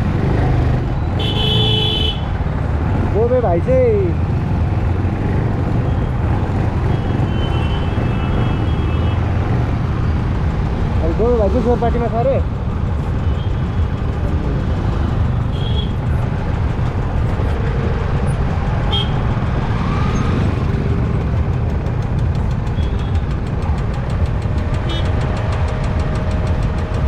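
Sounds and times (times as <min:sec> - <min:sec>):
traffic engines rumbling: 0:00.0 - 0:27.0
vehicle horn toots: 0:01.2 - 0:02.2.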